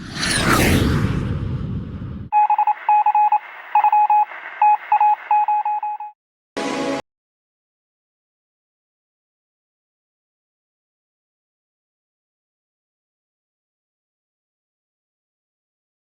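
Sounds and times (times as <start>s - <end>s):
loud whooshing: 0.0s - 2.3s
short electronic beeps: 2.3s - 6.2s.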